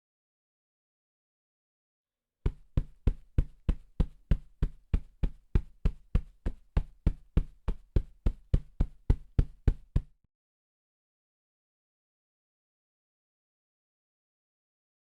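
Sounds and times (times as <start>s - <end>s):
hand thumping a sofa cushion: 2.5s - 10.1s.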